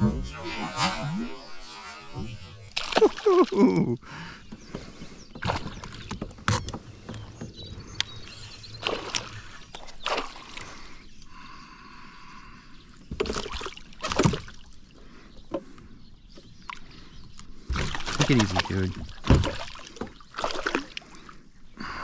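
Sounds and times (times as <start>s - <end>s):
water splashing and sloshing: 2.1s - 3.8s, 4.5s - 11.2s, 13.0s - 21.8s.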